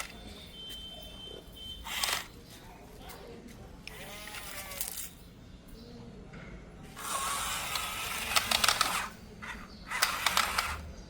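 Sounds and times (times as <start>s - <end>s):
mechanism whirring with ratchet clicks: 1.9s - 2.4s, 7.0s - 10.9s.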